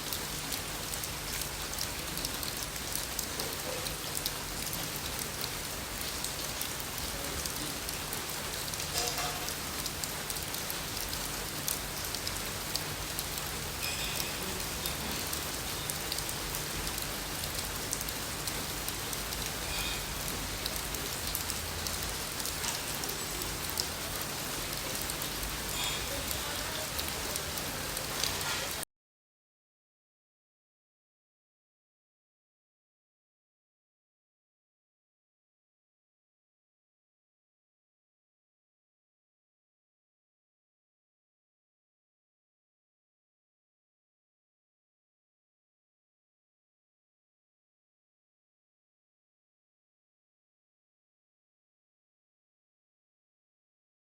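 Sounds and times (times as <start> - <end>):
steady rain hiss: 0.0 - 28.8
raindrop taps: 8.8 - 9.6.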